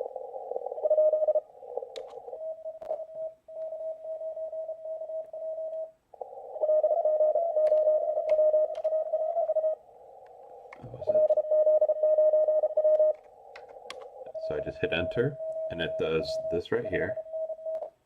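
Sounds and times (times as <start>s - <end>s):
morse code tone: 0.8s - 1.5s, 6.6s - 9.8s, 10.8s - 13.2s, 14.3s - 17.9s.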